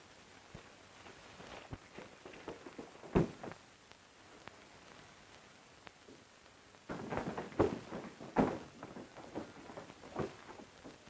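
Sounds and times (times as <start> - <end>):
sharp knocks and thuds: 2.0 - 3.6, 6.9 - 11.0.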